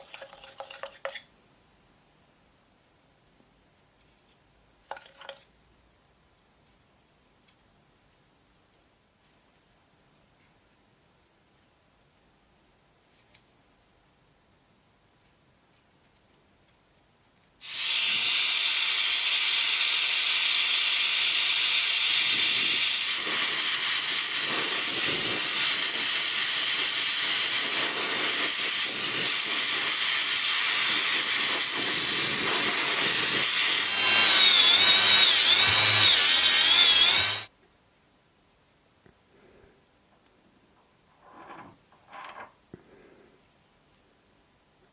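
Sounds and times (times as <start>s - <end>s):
torch flame hissing: 17.6s - 37.5s
wavering high whistle: 32.6s - 37.5s.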